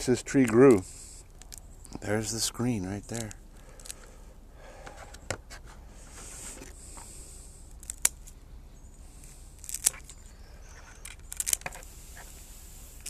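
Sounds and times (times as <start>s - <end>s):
roots and soil rustling: 9.1s - 13.0s.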